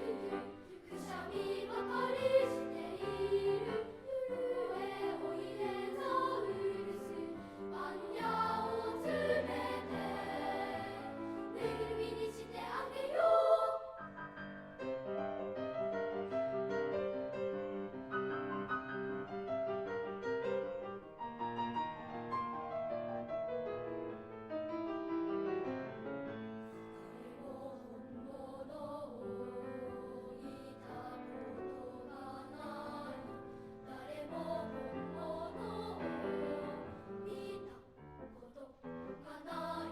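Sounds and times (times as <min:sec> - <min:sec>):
children's choir singing: 0:00.0 - 0:14.2, 0:26.8 - 0:39.9
piano accompaniment: 0:00.0 - 0:27.3.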